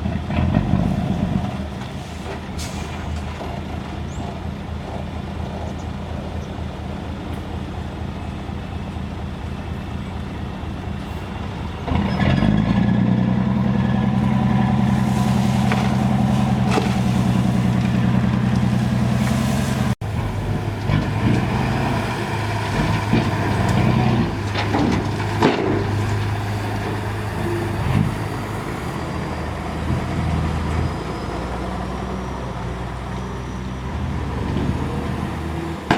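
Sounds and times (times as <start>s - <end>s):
heavy machinery diesel engines: 0.0s - 35.9s
knocks and clanks: 22.5s - 27.0s.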